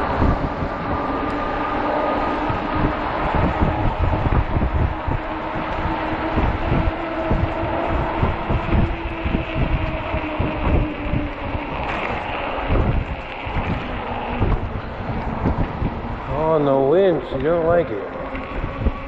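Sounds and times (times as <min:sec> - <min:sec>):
electric motor whine: 0:00.0 - 0:19.0
wind buffeting microphone: 0:00.0 - 0:19.0.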